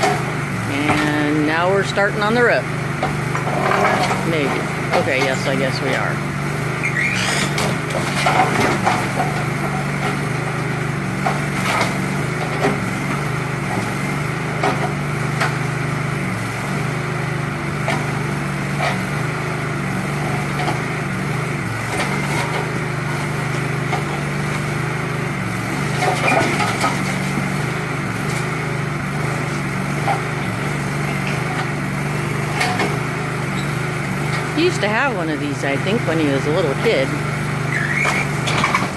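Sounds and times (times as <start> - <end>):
backhoe engine running: 0.0 - 38.9.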